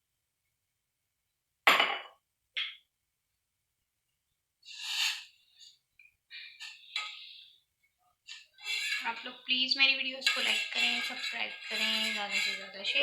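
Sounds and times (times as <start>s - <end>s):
rustling: 8.3s - 9.3s
kitchen vessels clinking: 8.3s - 13.0s
kitchen vessels knocking: 8.3s - 13.0s.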